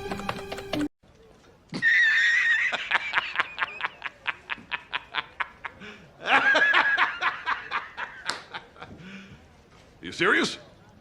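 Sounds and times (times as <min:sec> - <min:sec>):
high-pitched snickering laugh: 0:01.8 - 0:08.9.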